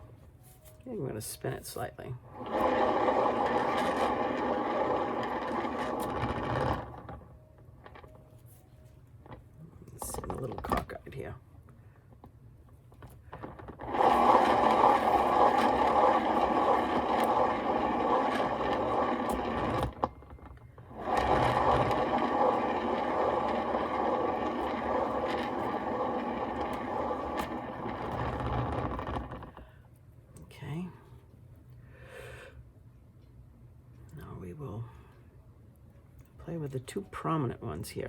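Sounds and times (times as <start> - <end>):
small electric blower running: 2.3 - 7.2, 13.7 - 29.6.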